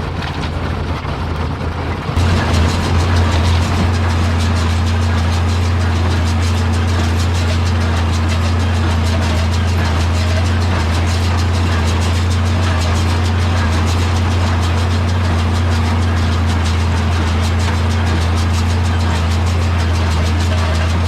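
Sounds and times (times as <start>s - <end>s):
tractor engine drone: 0.0s - 21.0s
baler machinery ticking: 2.2s - 21.0s.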